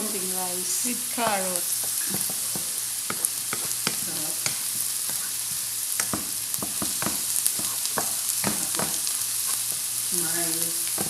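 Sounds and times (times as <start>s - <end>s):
rice sizzling in a hot pan: 0.0s - 11.0s
utensil scraping against pan: 1.3s - 9.7s.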